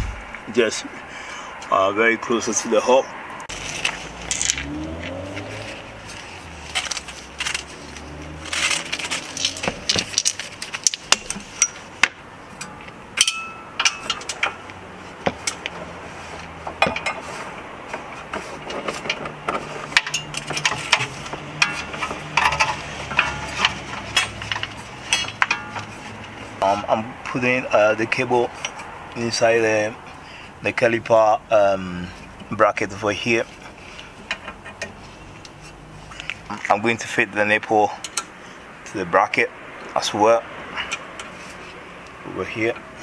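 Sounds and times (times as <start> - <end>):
metallic clicks and clinks of tools: 3.6 - 5.2, 6.6 - 11.8, 12.6 - 14.6.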